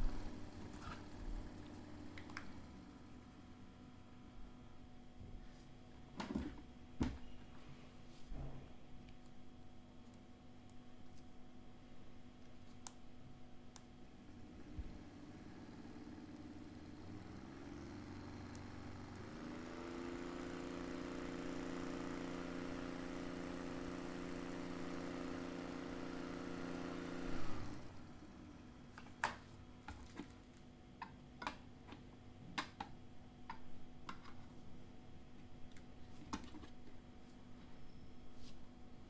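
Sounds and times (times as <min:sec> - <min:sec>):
desk fan humming: 0:00.0 - 0:07.2, 0:12.3 - 0:30.8.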